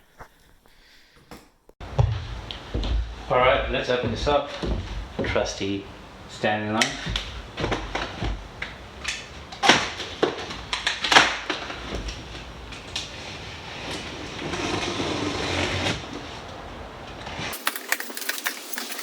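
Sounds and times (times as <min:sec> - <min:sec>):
knocks and scrapes: 0:01.8 - 0:05.6, 0:06.9 - 0:08.8.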